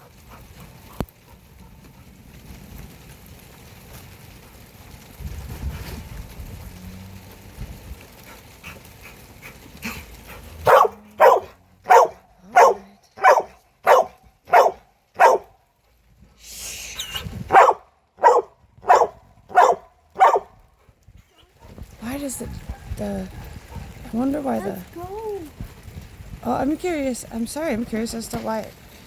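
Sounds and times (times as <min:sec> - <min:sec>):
dog barking: 0:10.6 - 0:15.6, 0:17.5 - 0:20.6, 0:22.4 - 0:24.1.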